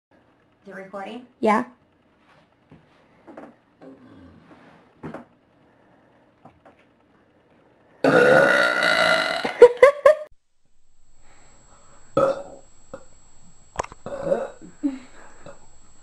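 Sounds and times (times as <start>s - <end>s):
girl burping: 8.0s - 9.6s, 12.2s - 12.5s, 14.0s - 15.6s.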